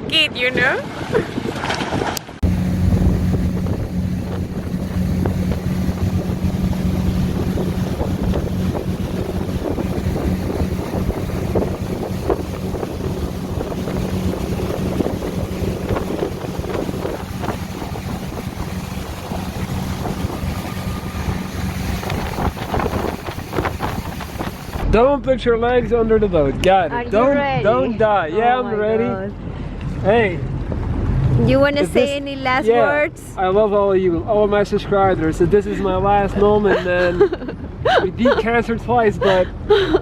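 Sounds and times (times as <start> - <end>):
wind rushing over microphone: 0.0 - 25.0, 29.2 - 33.3
motorboat engine running: 2.4 - 24.9.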